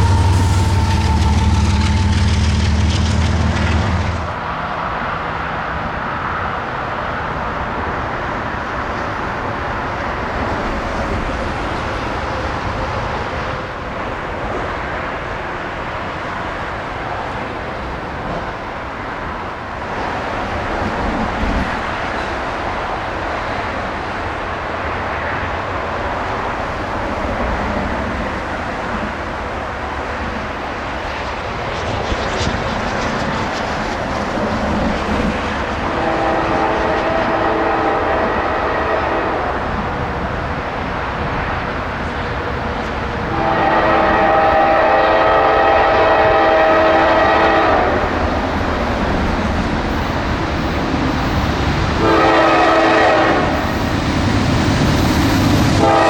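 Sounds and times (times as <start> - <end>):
train horn blasts: 0.0 - 4.4, 35.8 - 39.7, 43.2 - 48.1, 52.0 - 53.8, 55.8 - 56.0
train rumbling past: 0.0 - 56.0.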